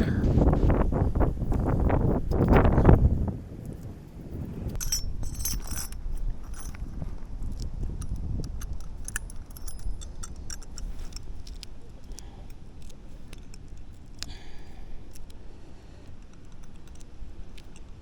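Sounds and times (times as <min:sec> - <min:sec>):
low rumble: 0:00.0 - 0:12.5
small metal tools clinking: 0:04.7 - 0:15.4, 0:16.0 - 0:18.0.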